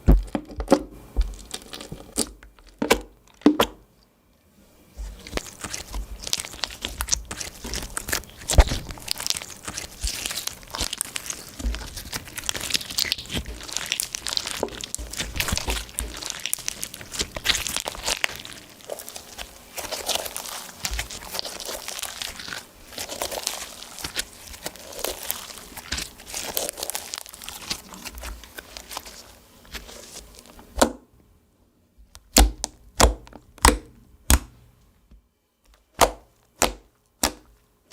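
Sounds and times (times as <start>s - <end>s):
slime crackling and popping: 5.0s - 30.8s, 35.9s - 37.5s.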